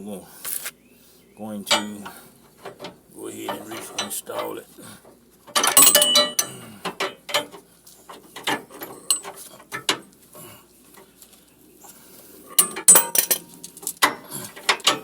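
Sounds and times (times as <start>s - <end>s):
metallic clinks of hand tools: 1.7s - 2.2s, 5.6s - 7.6s, 8.4s - 9.9s, 12.6s - 15.0s.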